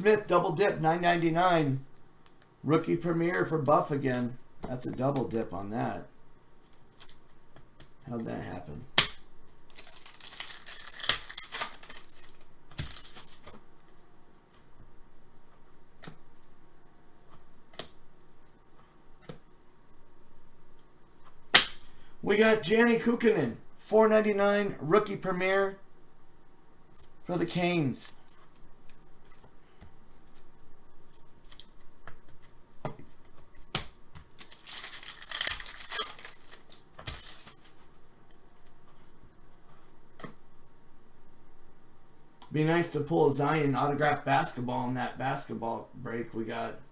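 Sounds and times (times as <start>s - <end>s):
wrapper tearing and crinkling: 9.7s - 13.5s, 34.3s - 37.8s
trading cards clicking and sliding: 33.7s - 37.8s.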